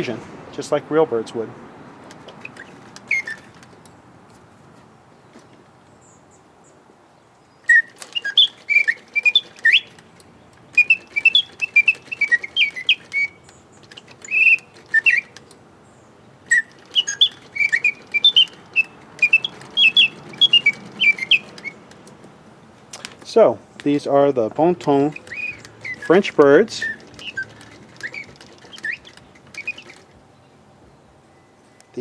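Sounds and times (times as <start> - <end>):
mechanical bird whistling chirps: 2.4 - 3.8, 7.6 - 15.6, 16.4 - 22.1, 24.6 - 30.2.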